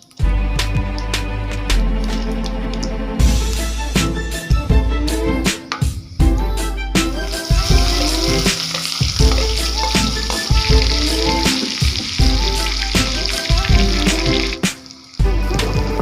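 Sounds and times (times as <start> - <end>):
background music with deep bass: 0.2 - 16.0
food sizzling in a pan: 7.0 - 16.0.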